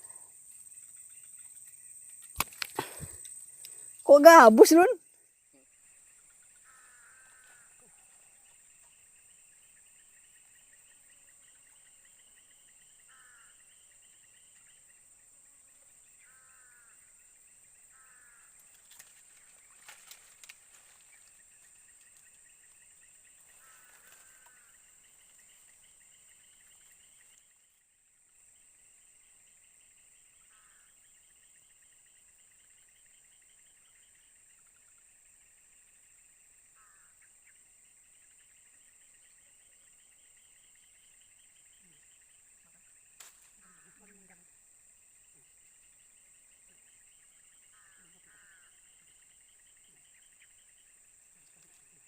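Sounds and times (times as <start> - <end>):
pulsing insect trill: 0.0 - 52.0.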